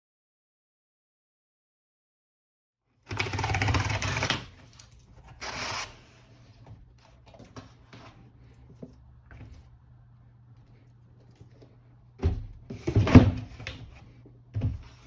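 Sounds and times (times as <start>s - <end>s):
packaging ripping: 3.1s - 6.0s.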